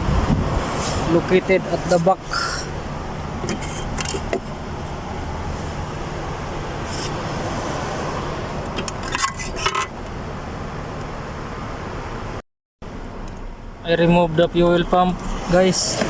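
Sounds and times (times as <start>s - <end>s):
car engine idling: 0.0s - 12.4s
metal tools clinking: 8.9s - 9.9s.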